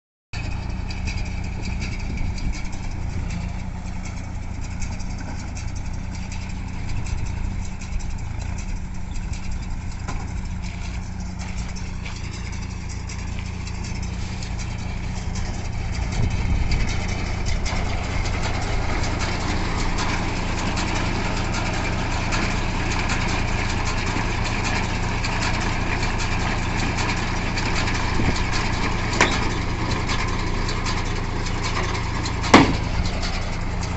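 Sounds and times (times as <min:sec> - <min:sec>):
tractor diesel engine running: 0:00.3 - 0:33.9
baler rushing and rattling: 0:00.4 - 0:33.9.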